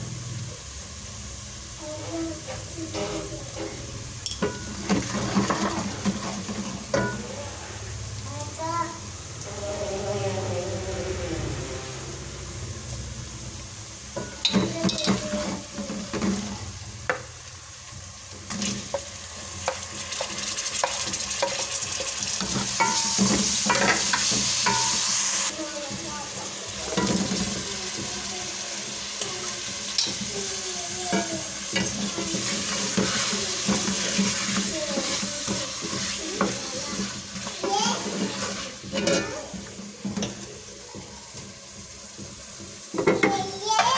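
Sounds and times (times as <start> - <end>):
food sizzling in a pan: 0.0 - 43.9
spoon scraping a pan: 2.0 - 7.6, 14.2 - 17.2, 18.5 - 25.5, 29.9 - 41.5.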